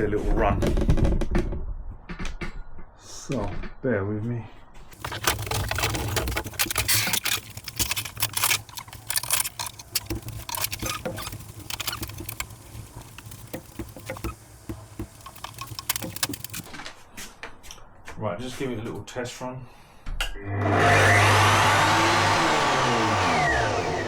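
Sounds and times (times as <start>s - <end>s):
handling clicks and knocks: 5.0s - 16.8s.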